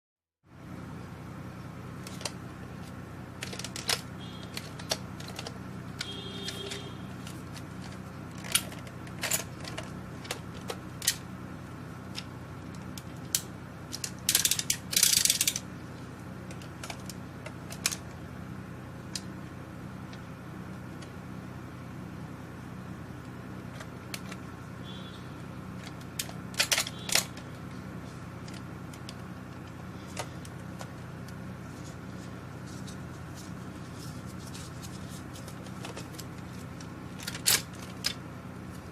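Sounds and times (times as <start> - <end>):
steady low hum: 0.4 - 38.9
toy blaster clicking and ratcheting: 13.3 - 15.6.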